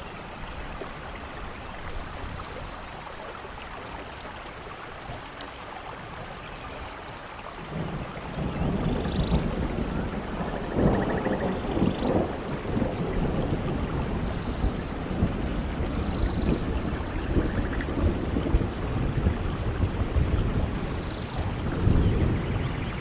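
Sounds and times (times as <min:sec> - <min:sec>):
heavy rain falling: 0:00.0 - 0:23.0
low rumbling thunder: 0:07.7 - 0:23.0.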